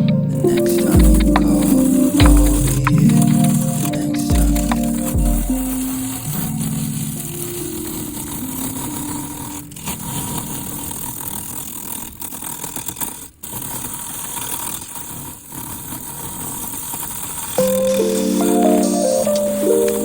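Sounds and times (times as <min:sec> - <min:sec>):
wood lathe grinding: 0:00.0 - 0:20.0.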